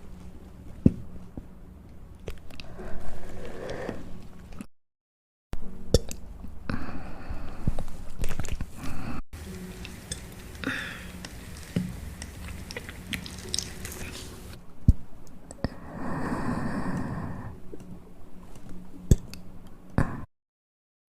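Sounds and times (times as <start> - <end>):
chewing with wet clicks: 9.5 - 14.6.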